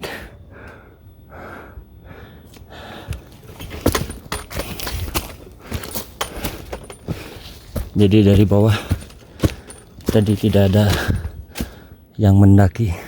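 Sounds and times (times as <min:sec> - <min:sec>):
footsteps crunching on trail: 0:02.5 - 0:12.0.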